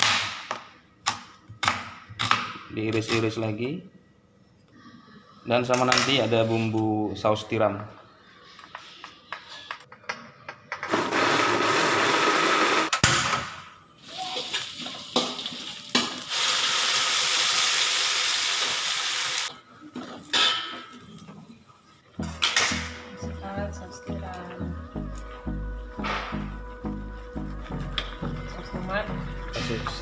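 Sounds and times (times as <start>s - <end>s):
electric blender grinding: 10.9s - 12.9s.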